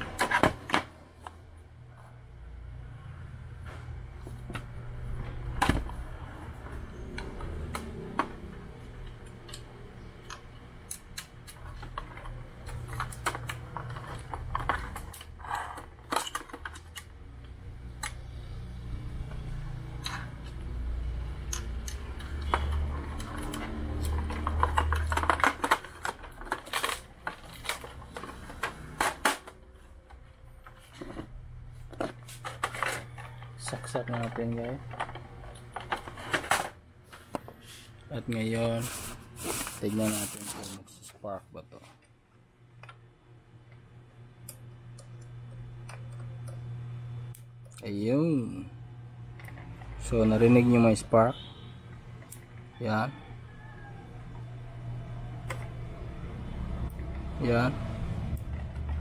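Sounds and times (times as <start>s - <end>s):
plastic and metal parts rattling: 10.3s - 17.2s, 22.2s - 31.3s, 31.9s - 37.4s.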